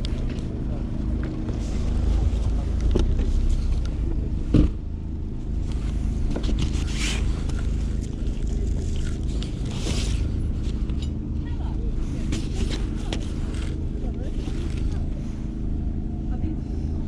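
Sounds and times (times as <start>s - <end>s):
steady low rumble: 0.0s - 17.0s
sharp thump: 4.5s - 4.8s.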